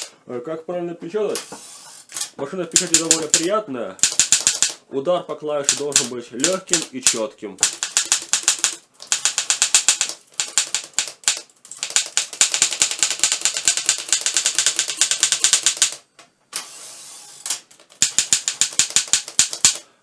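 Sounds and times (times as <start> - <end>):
typewriter rasp: 1.4 - 4.8, 5.6 - 16.0, 16.6 - 19.9
typewriter typebar strikes: 2.7 - 4.8, 5.6 - 16.0, 17.8 - 19.8.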